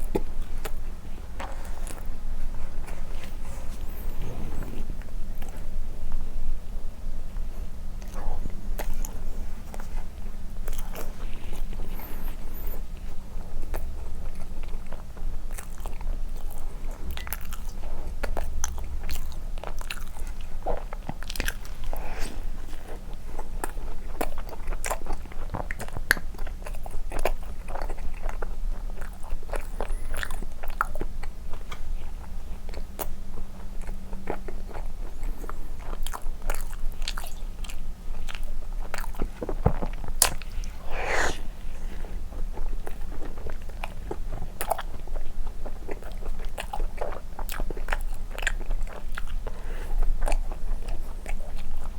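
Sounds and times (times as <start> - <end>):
chewing and biting bread: 0.0 - 6.5, 7.3 - 51.9
low steady hum: 0.0 - 51.9
wet mouth clicks: 40.2 - 41.6.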